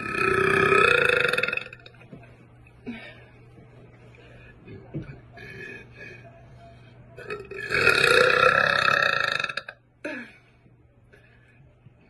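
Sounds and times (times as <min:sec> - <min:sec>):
woman burping: 0:00.0 - 0:02.0, 0:07.2 - 0:10.4.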